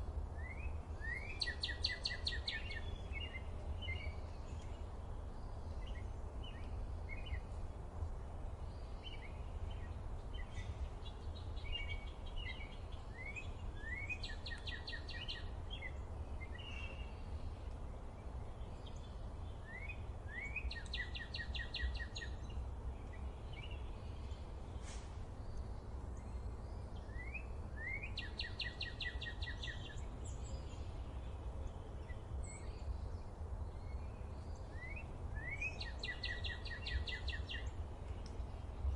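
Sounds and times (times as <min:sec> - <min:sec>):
songbird singing with trill: 0:00.4 - 0:07.6, 0:08.6 - 0:38.9
short bird chirps: 0:24.8 - 0:25.2.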